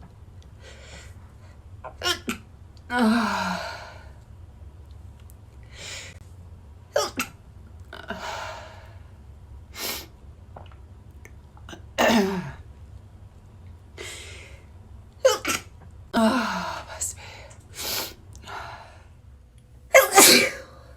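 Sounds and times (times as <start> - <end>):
person sneezing: 20.0 - 20.7.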